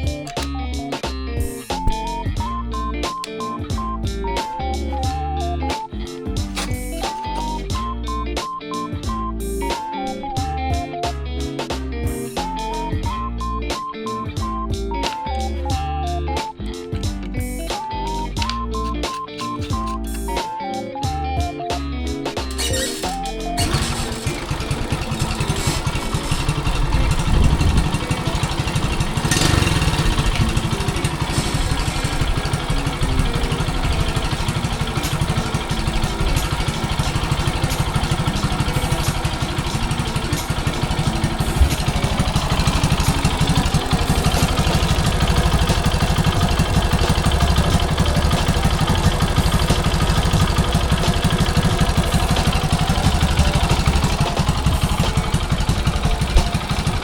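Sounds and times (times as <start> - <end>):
motorcycle engine running: 0.0 - 0.6, 1.4 - 8.0, 14.4 - 20.5, 22.4 - 57.0.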